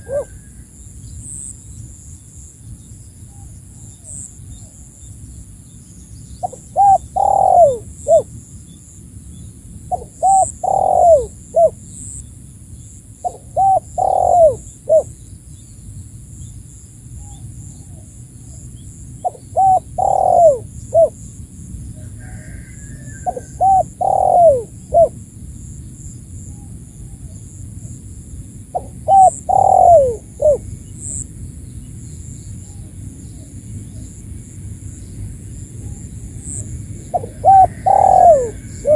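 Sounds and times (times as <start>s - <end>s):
dove cooing: 0.0s - 0.5s, 6.4s - 8.3s, 9.9s - 11.8s, 13.2s - 15.1s, 19.2s - 21.2s, 22.1s - 25.2s, 28.7s - 31.2s, 36.5s - 38.9s.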